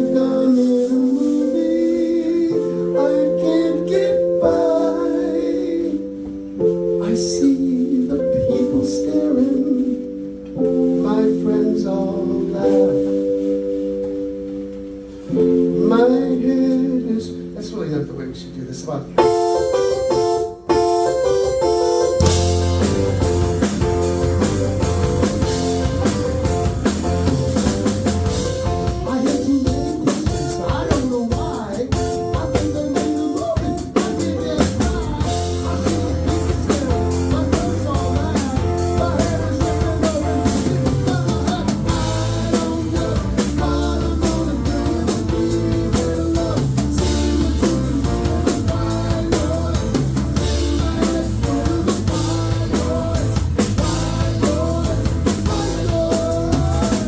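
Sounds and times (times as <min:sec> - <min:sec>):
bass guitar: 0:06.0 - 0:57.0
drum kit: 0:19.1 - 0:57.0
electric guitar: 0:19.2 - 0:57.0.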